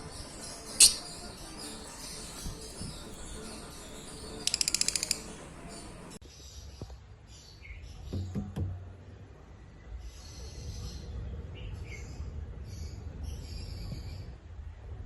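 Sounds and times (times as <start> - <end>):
lovebirds chattering: 0.0 - 6.2
bird chirps: 0.0 - 6.8.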